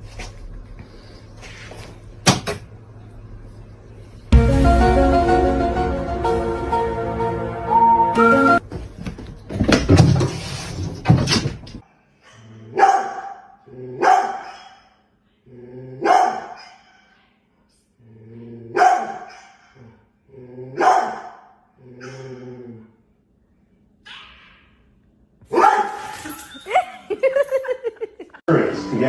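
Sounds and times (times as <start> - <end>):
dog barking: 12.7 - 15.0, 16.0 - 17.0, 18.8 - 19.7, 20.8 - 21.4, 25.5 - 26.1.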